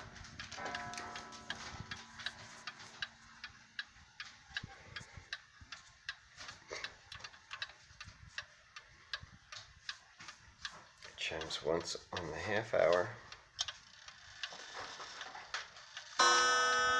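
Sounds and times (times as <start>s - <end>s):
clock ticking: 0.0s - 15.2s
soft clock gong ringing: 0.5s - 3.5s, 16.2s - 16.9s.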